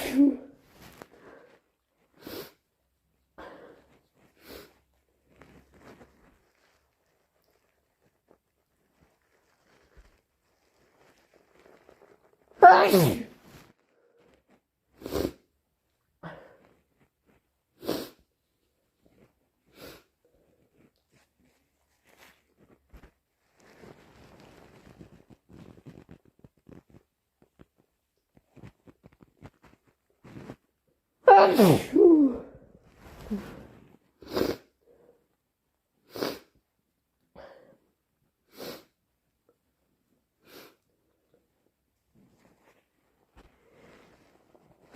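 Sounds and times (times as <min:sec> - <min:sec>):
person sneezing: 0:00.0 - 0:00.6, 0:12.6 - 0:13.4, 0:31.2 - 0:32.6
person sniffing: 0:01.1 - 0:02.7, 0:03.4 - 0:04.9, 0:12.6 - 0:13.5, 0:15.0 - 0:15.5, 0:17.8 - 0:18.3, 0:31.3 - 0:34.8, 0:36.1 - 0:36.6, 0:38.5 - 0:39.0, 0:40.4 - 0:40.9.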